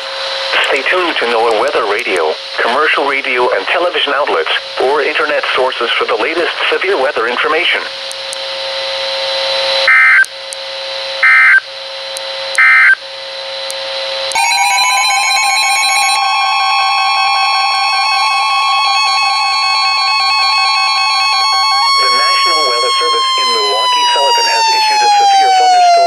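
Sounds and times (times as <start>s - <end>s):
pulsing alarm tones: 9.8s - 10.3s, 11.2s - 11.7s, 12.6s - 13.0s, 14.3s - 26.0s
short data bursts: 9.8s - 10.3s, 11.2s - 11.7s, 12.6s - 13.0s
loud steady alert tone: 9.9s - 10.3s, 11.2s - 11.6s, 12.6s - 13.0s, 14.3s - 26.0s.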